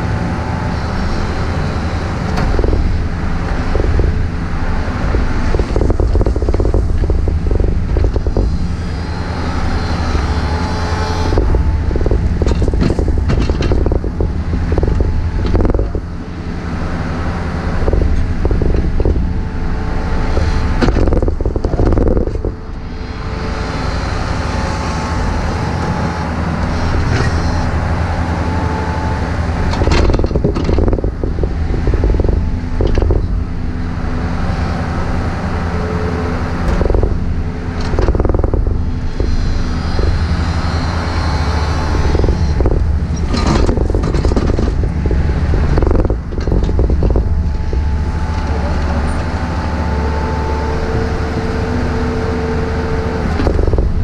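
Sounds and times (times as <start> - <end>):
excavator diesel engine running: 0.0 - 54.0
knocks and scrapes of digging: 2.2 - 16.2, 35.7 - 54.0.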